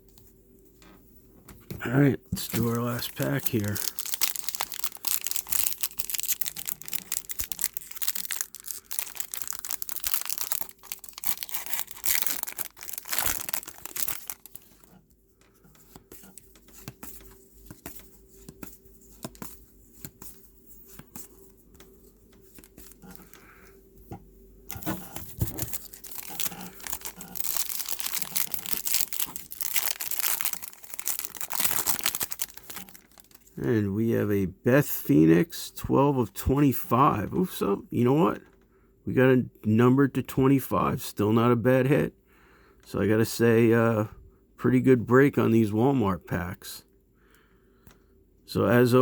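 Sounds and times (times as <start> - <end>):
cards rustling and sliding: 2.4 - 14.9, 15.5 - 23.6
foil pack tearing and crinkling: 2.4 - 14.9, 24.8 - 33.5.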